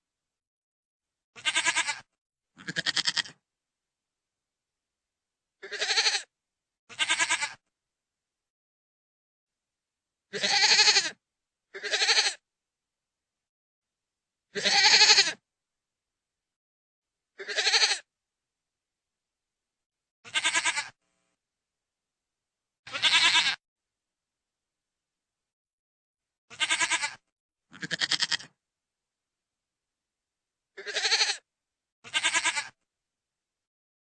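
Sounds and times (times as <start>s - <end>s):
goat bleating: 1.4s - 3.4s, 5.6s - 6.3s, 6.9s - 7.6s, 10.3s - 12.4s, 14.6s - 15.4s, 17.4s - 18.1s, 20.2s - 21.0s, 22.9s - 23.6s, 26.5s - 28.5s, 30.8s - 32.8s.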